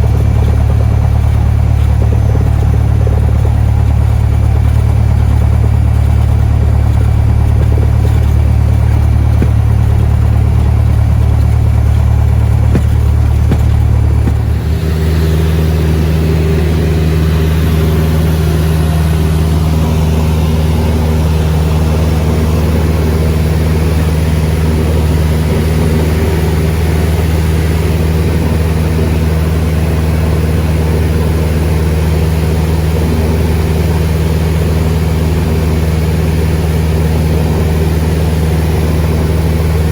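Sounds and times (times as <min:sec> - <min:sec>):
light aircraft engine and propeller: 0:00.0 - 0:39.9.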